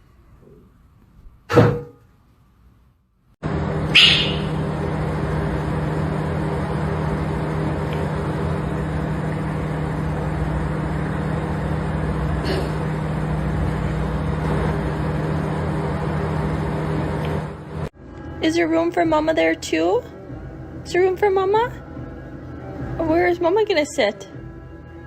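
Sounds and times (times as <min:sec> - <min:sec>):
steady mechanical hum: 0:00.0 - 0:25.0.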